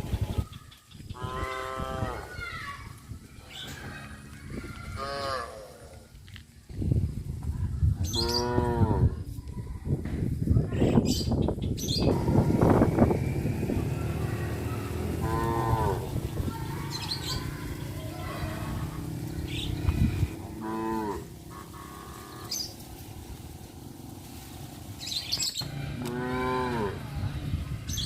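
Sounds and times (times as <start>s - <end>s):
cows mooing: 1.2s - 2.3s, 8.2s - 9.2s, 12.1s - 16.9s, 18.4s - 22.7s, 25.6s - 27.2s.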